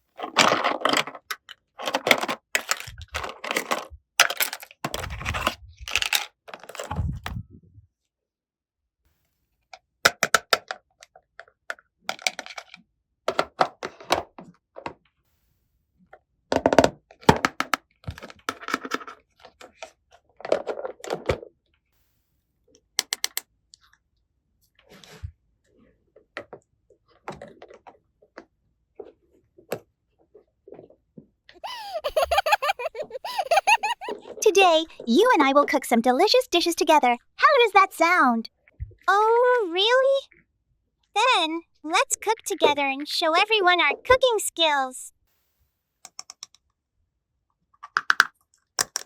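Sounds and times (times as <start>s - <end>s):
plastic toy pieces clicking: 0.6s - 5.0s, 5.9s - 6.9s, 23.0s - 23.4s, 47.9s - 49.0s.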